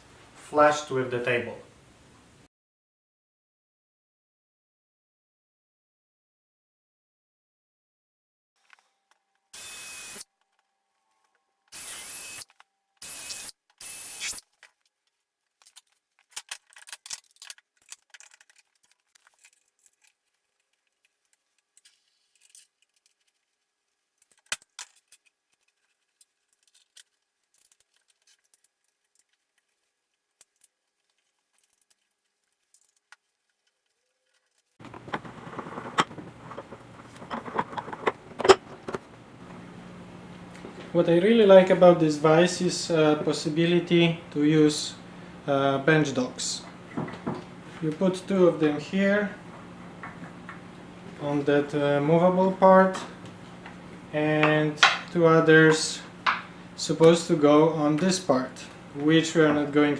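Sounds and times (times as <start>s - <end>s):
power drill motor whining: 9.6s - 10.2s, 11.7s - 14.4s
parts clicking and clattering: 11.2s - 23.5s, 24.2s - 39.1s
clattering and scraping: 34.3s - 39.1s.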